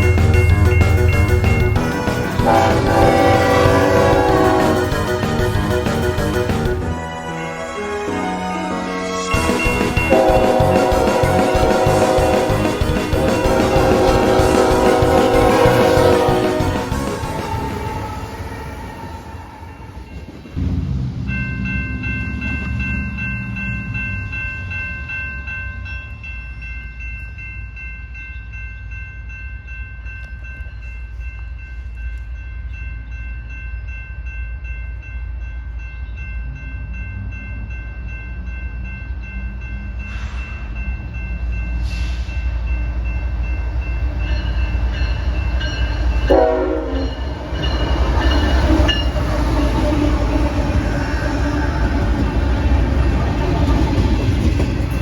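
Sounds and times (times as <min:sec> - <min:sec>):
steady high tones: 0:00.0 - 0:20.6
diesel locomotives rumbling: 0:00.0 - 0:55.0.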